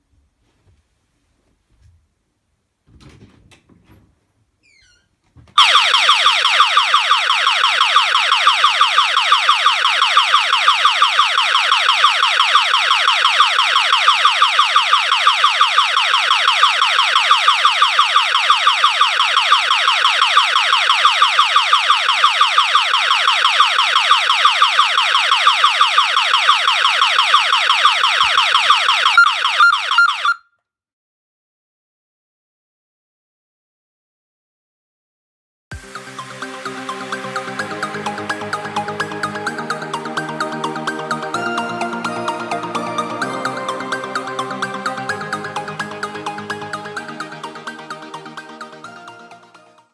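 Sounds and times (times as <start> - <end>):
electronic alarm siren sweeping: 5.6 - 30.4, 35.7 - 49.9.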